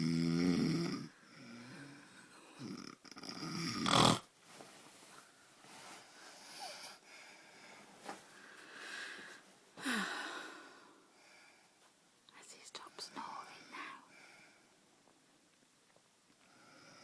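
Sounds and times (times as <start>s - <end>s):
person snoring: 0.0s - 4.3s.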